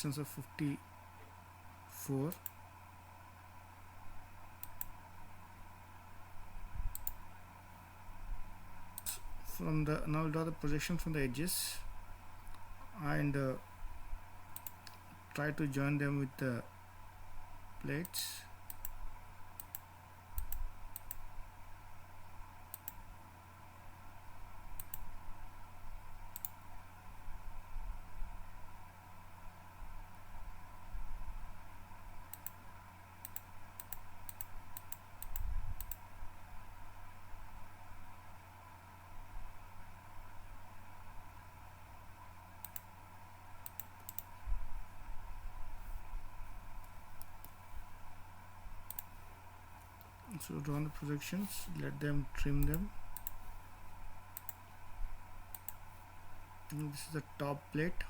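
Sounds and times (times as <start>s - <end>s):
low steady hum: 0.0s - 58.0s
computer mouse clicking: 2.3s - 2.6s, 4.6s - 5.0s, 6.9s - 7.2s, 14.5s - 15.2s, 18.0s - 19.0s, 19.6s - 21.3s, 22.7s - 23.0s, 24.8s - 25.1s, 26.3s - 26.6s, 32.3s - 32.6s, 33.2s - 36.1s, 42.6s - 42.9s, 43.6s - 44.3s, 46.8s - 47.6s, 48.8s - 49.2s, 52.5s - 53.5s, 54.3s - 54.7s, 55.5s - 55.9s.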